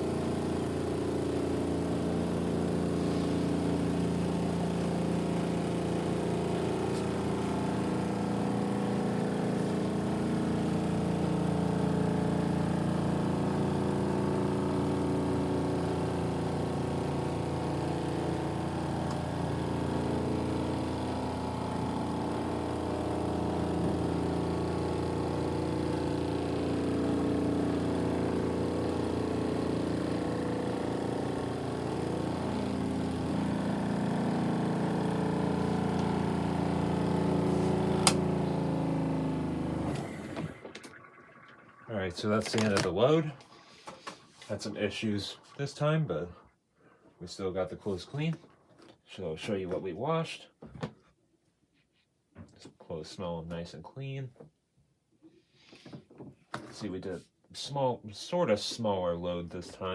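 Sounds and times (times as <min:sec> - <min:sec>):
washing machine motor humming: 0:00.0 - 0:43.1.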